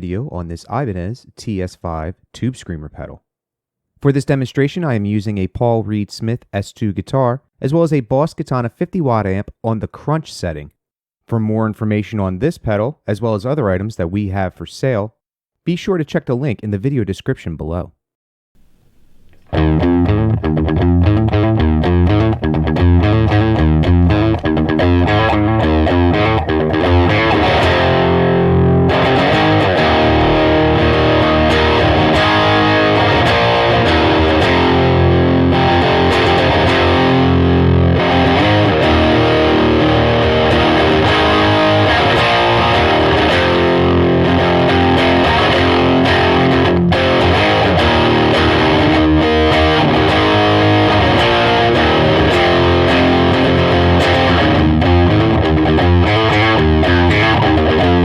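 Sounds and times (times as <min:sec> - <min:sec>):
distorted electric guitar: 0:19.0 - 0:58.0.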